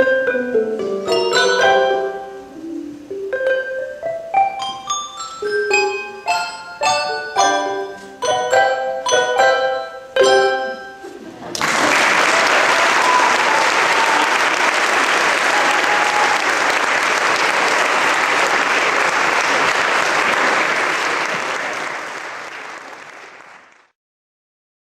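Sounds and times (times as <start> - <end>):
audience applauding: 11.5 - 23.9.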